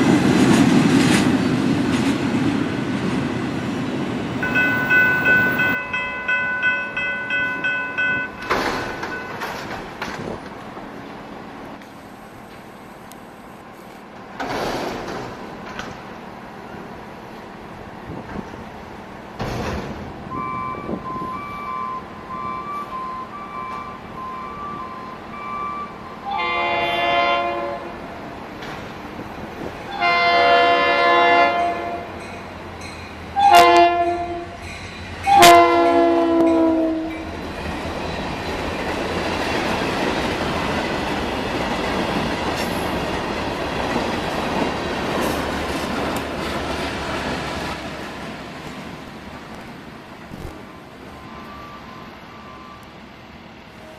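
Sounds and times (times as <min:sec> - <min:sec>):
train wheels rumbling on rails: 0:00.0 - 0:53.9
crossing bell ringing: 0:04.3 - 0:10.1, 0:31.5 - 0:37.4
locomotive horn blasts: 0:20.3 - 0:28.1, 0:29.9 - 0:32.2, 0:33.4 - 0:34.6, 0:35.3 - 0:37.2.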